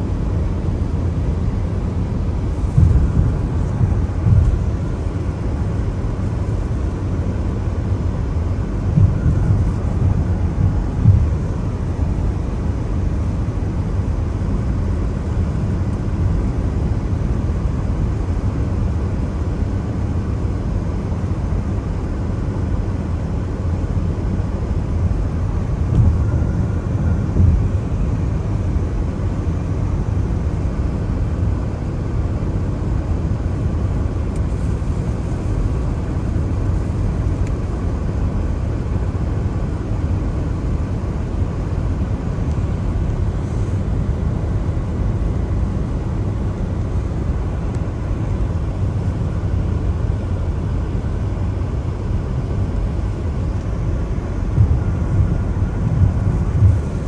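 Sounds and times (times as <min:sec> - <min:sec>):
car bumps: 0:02.5 - 0:05.1, 0:09.0 - 0:11.6, 0:25.9 - 0:28.0
car tyres on wet road: 0:33.6 - 0:38.9, 0:52.7 - 0:57.0.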